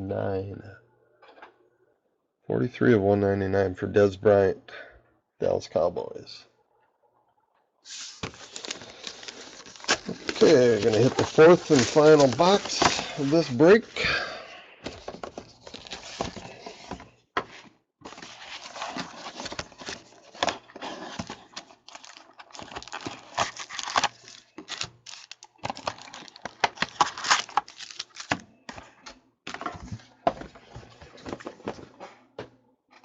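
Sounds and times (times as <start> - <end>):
plastic wrapping tearing and crinkling: 7.9 - 13.8, 20.8 - 28.4.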